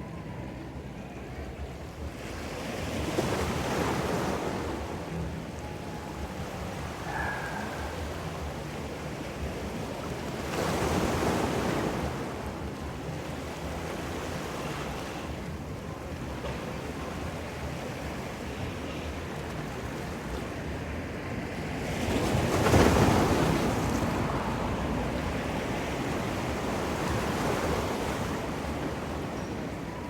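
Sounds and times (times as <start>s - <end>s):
ocean surf washing ashore: 6.5s - 12.5s, 19.8s - 30.0s.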